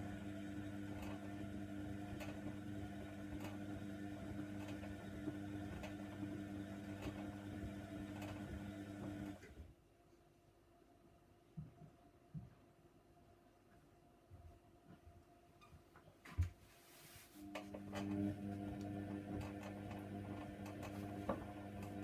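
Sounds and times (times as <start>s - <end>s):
washer dryer humming: 0.0s - 9.5s, 17.4s - 22.0s.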